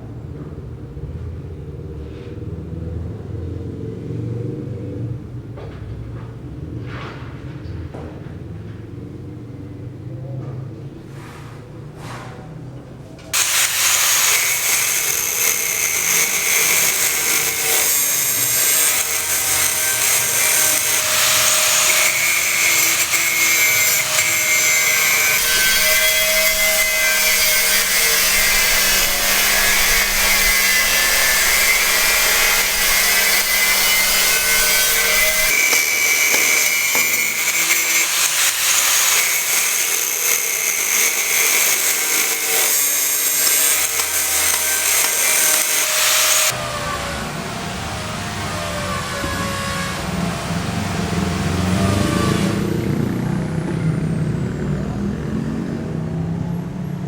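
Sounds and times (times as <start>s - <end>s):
power tool grinding: 13.4s - 53.0s.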